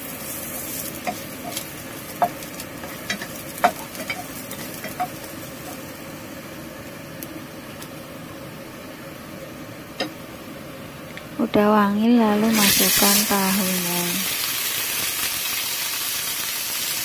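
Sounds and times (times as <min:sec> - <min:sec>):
garlic sizzling in oil: 0:00.0 - 0:08.2, 0:11.9 - 0:17.0.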